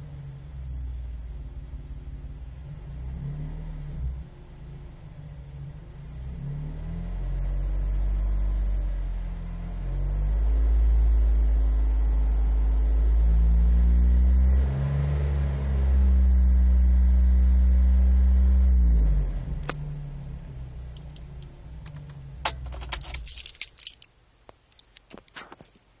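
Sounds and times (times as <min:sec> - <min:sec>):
engine revving: 0:00.0 - 0:23.6
keys jangling: 0:21.9 - 0:24.1, 0:24.7 - 0:25.4.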